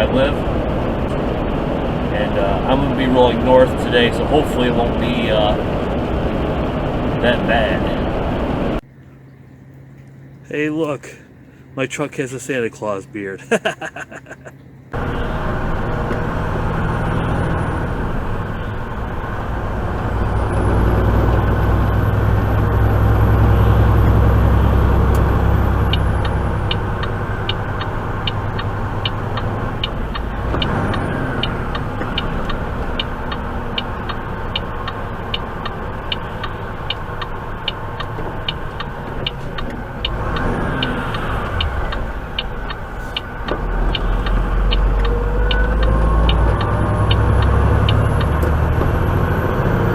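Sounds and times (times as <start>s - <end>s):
truck engine and road noise: 0.0s - 49.9s
sharp ticking: 24.6s - 49.1s.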